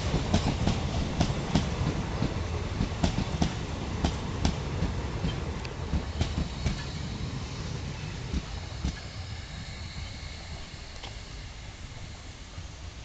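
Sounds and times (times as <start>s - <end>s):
train wheels knocking over rail joints: 0.0s - 7.0s
train rumble: 0.0s - 13.0s.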